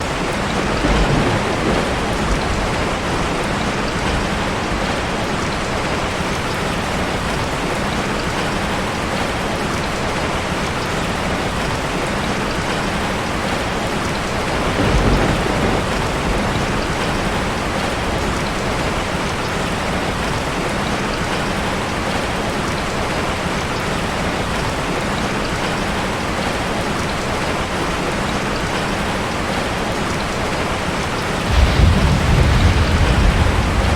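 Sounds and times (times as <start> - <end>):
low thunder rumble: 0.0 - 5.9, 14.2 - 19.0, 31.4 - 33.9
heavy rain falling: 0.0 - 33.9.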